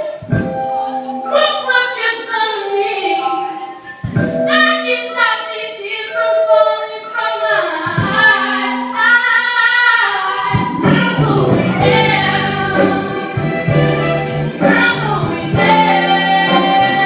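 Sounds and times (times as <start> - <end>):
people singing: 4.5 - 17.0
instrumental backing with bass: 10.4 - 17.0.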